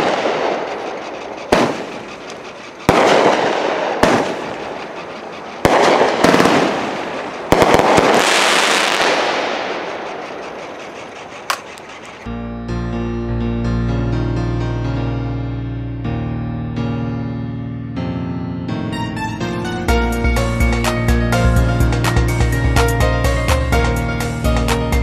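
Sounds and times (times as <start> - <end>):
firework bangs: 2.9 - 4.8, 5.6 - 10.2.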